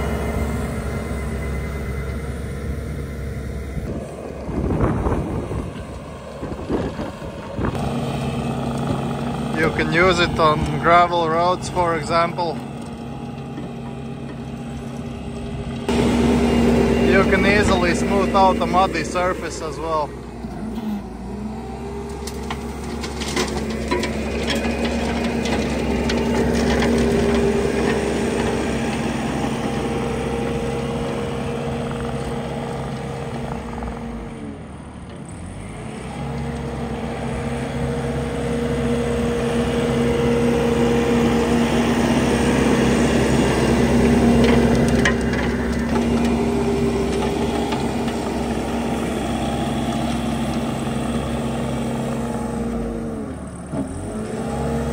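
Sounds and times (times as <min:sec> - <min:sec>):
loader engine running: 0:00.0 - 0:54.9.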